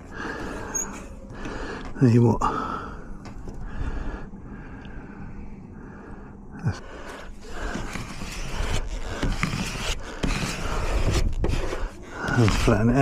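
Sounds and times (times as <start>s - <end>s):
rough rustling noise: 7.1s - 13.0s.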